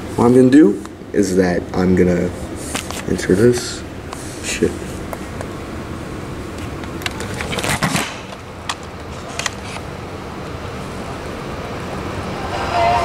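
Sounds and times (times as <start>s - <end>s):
background hiss: 0.0s - 7.0s
radio handling clicks and knocks: 6.6s - 9.8s.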